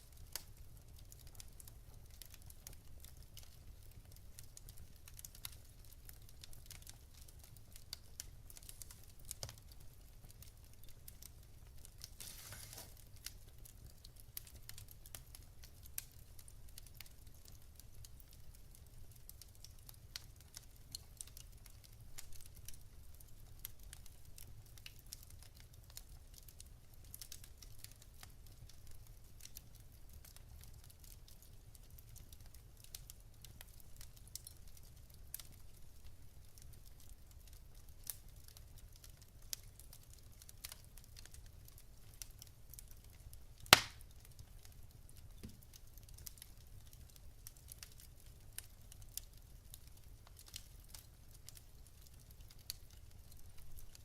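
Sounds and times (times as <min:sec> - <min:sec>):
wood fire crackling: 0:00.0 - 0:54.0
fire hissing: 0:12.2 - 0:13.0.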